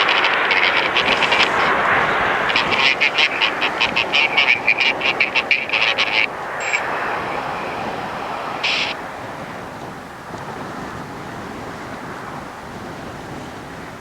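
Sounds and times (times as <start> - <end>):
rapid sharp chirps: 0.0 - 9.0
jet airliner roar: 0.0 - 14.0
short high beep: 6.6 - 7.0.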